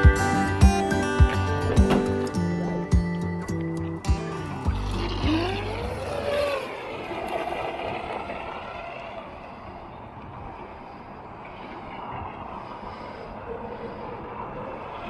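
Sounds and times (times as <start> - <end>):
toy boat electric motor whining: 4.7 - 10.1.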